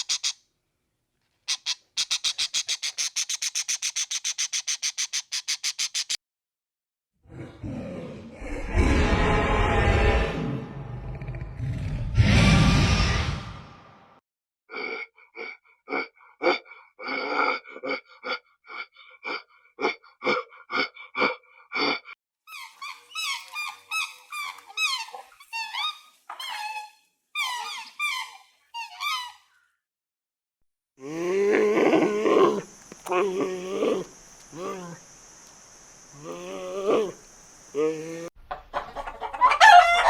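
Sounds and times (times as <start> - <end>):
squeaky sliding animal calls: 0.0 - 0.4, 22.5 - 29.4
low animal call: 31.0 - 35.1, 36.1 - 38.3.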